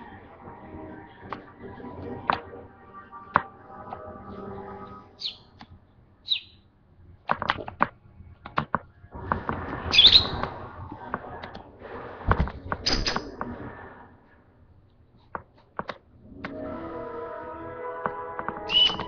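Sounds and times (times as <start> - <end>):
bird chirping: 4.4 - 6.7, 9.9 - 10.5, 18.6 - 19.0.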